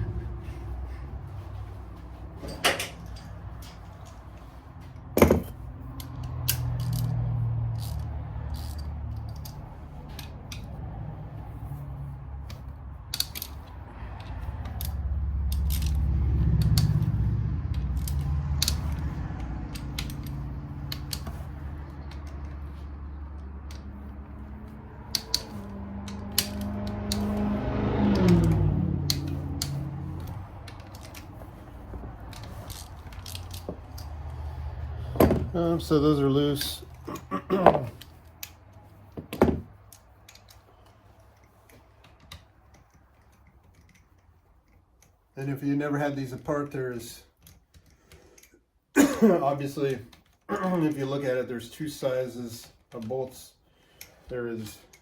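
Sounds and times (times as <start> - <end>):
low rumble: 0.0 - 2.4
wrench clicking on metal parts: 5.0 - 10.8, 12.4 - 27.5, 28.1 - 35.4, 36.4 - 45.2, 47.3 - 48.6.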